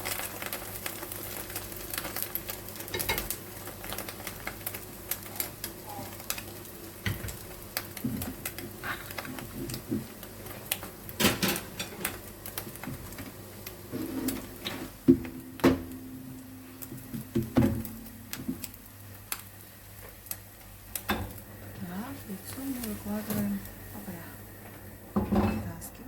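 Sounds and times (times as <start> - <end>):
utensils knocking frying pan: 15.0 - 18.7.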